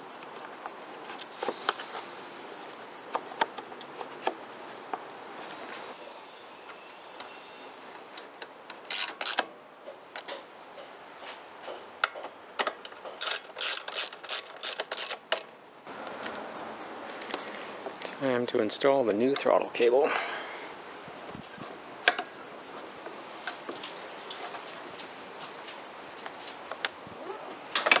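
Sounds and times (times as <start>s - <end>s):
tools and parts clicking: 8.4s - 9.5s, 12.0s - 15.5s.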